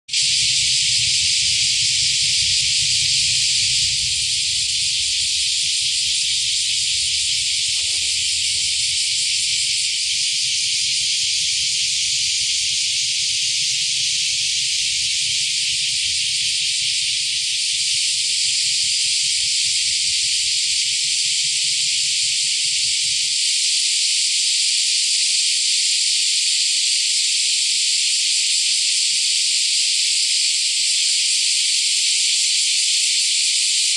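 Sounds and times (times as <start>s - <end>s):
cicadas shrilling: 0.1s - 33.9s
faint low rumble: 0.4s - 12.2s.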